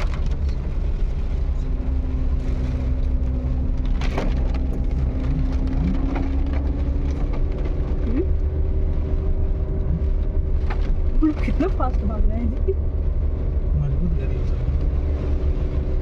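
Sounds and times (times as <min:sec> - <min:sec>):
vehicle engine and road rumble: 0:00.0 - 0:16.0
small knocks and rattles: 0:03.6 - 0:08.0.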